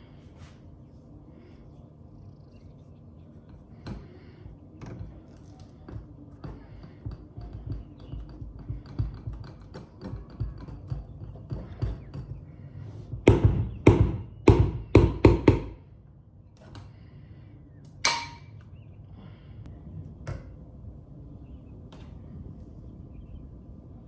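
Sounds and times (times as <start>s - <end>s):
loud knocks: 13.1s - 15.8s.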